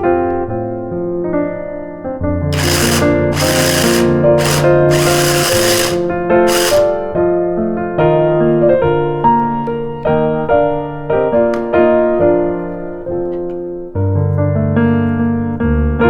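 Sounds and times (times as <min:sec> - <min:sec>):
whirring noise: 0:02.6 - 0:07.0.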